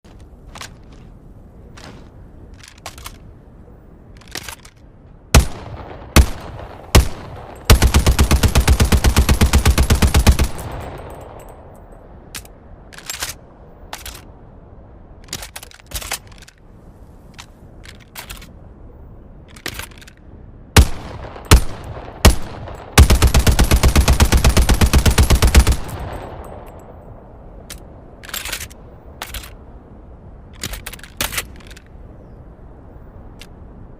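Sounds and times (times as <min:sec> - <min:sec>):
full-auto gun burst with echo: 0:05.4 - 0:11.0, 0:20.8 - 0:26.4.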